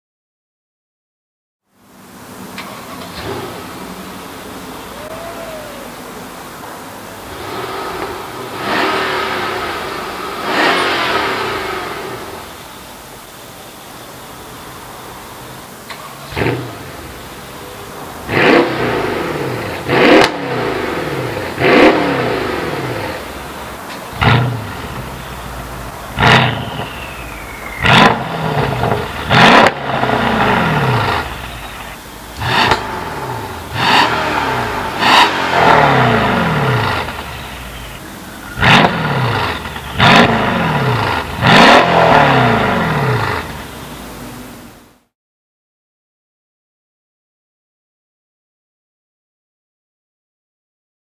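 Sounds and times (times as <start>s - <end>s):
car engine revving: 2.2s - 12.8s, 16.3s - 44.9s.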